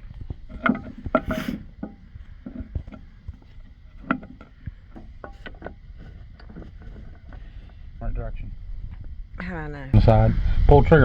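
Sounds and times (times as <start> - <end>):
metal parts clinking and knocking: 0.0 - 7.5
rustling: 0.0 - 9.5.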